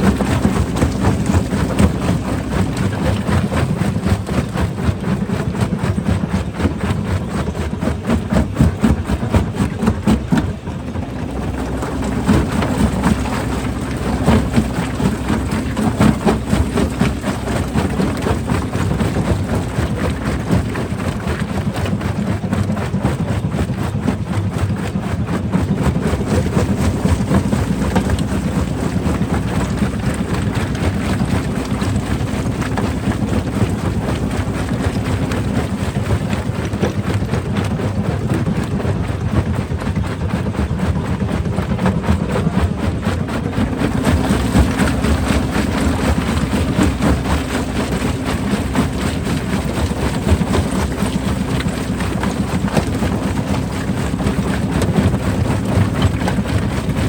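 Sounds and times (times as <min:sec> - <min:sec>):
heavy machine drone: 0:43.6 - 0:56.9.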